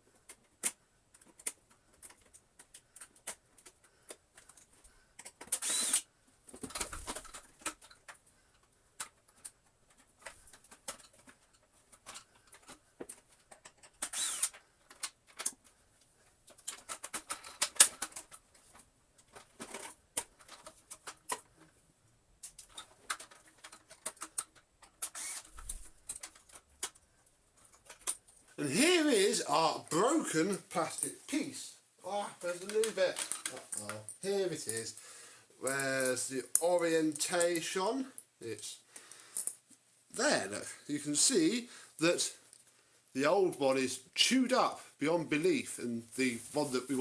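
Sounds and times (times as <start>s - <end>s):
plastic parts clicking and tapping: 0.0s - 21.8s, 22.4s - 28.6s, 32.4s - 34.2s.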